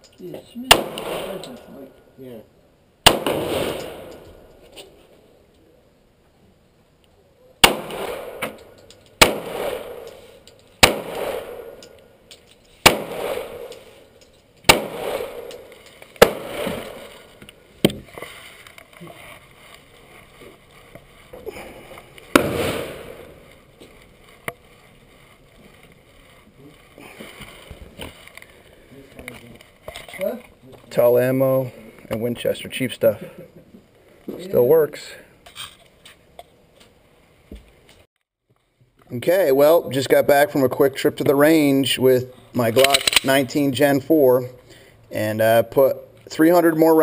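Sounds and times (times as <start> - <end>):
pistol shots echoing: 0.7 - 1.7, 3.0 - 4.2, 7.6 - 10.2, 10.8 - 12.0, 12.8 - 14.0, 14.6 - 17.2, 22.3 - 23.4.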